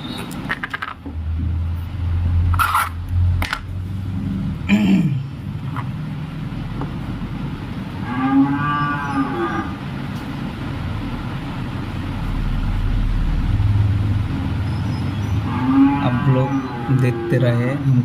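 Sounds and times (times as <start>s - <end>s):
cow mooing: 8.0s - 9.8s, 15.4s - 17.8s.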